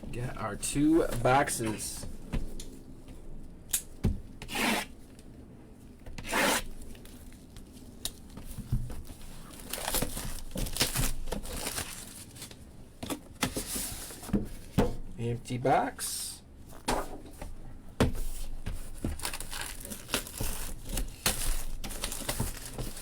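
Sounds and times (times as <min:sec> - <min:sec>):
plastic rustling: 0:06.8 - 0:14.7, 0:18.1 - 0:23.0
shrink-wrap ripping: 0:09.4 - 0:12.6, 0:19.1 - 0:23.0.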